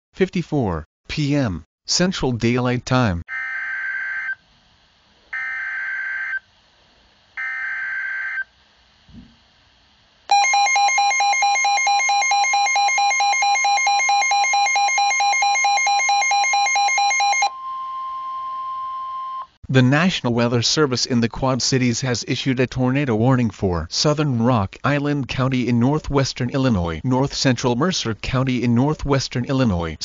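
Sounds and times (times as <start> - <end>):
harsh pulsing alarm tone: 10.3 - 18.9.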